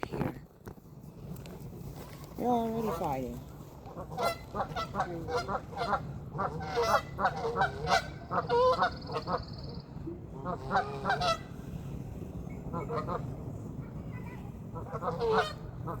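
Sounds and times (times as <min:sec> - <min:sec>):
waterfowl harsh calls: 0:03.9 - 0:09.8, 0:10.4 - 0:11.5, 0:12.7 - 0:13.2, 0:14.7 - 0:16.0.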